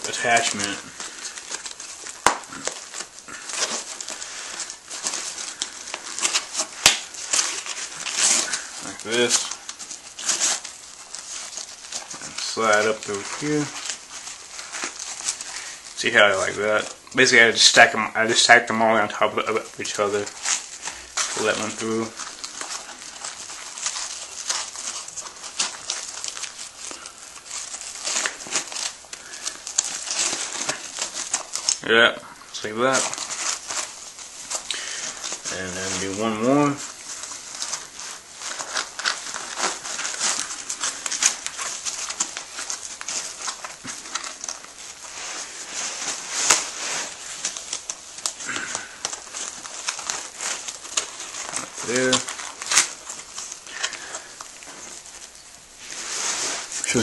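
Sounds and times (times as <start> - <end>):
nylon straps rustling and scraping: 0.0 - 57.0.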